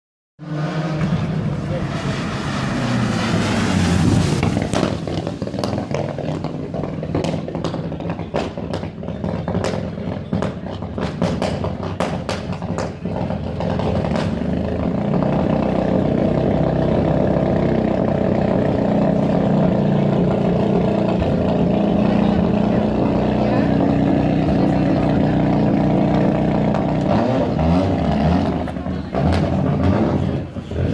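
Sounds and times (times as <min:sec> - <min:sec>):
car engine running: 0:00.9 - 0:30.9
exhaust popping and banging: 0:03.8 - 0:17.1.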